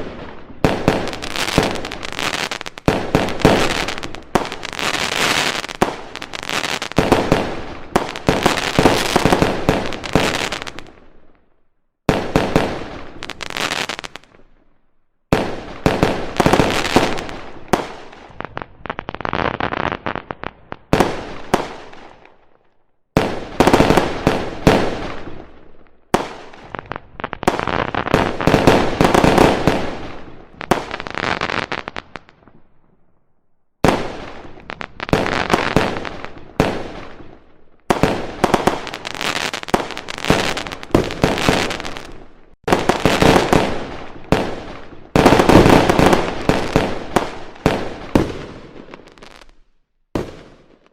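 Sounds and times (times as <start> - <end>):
fireworks bangs and crackling: 0.0 - 11.4, 12.0 - 14.7, 15.3 - 22.5, 23.2 - 32.7, 33.8 - 50.9.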